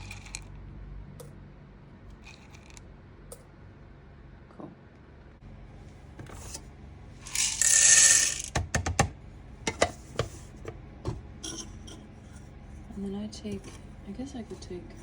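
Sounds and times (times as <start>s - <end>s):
coffee beans pouring: 0.0s - 0.4s, 7.2s - 8.5s
beans clicking on plastic: 0.0s - 0.5s, 2.1s - 2.8s, 7.3s - 9.1s.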